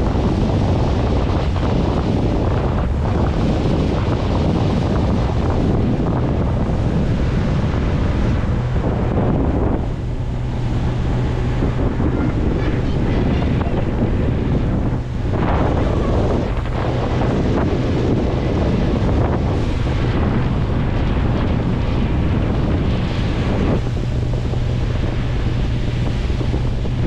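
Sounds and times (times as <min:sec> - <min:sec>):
low engine hum: 0:00.0 - 0:27.0
rushing water: 0:00.0 - 0:27.0
wind buffeting microphone: 0:00.0 - 0:27.0.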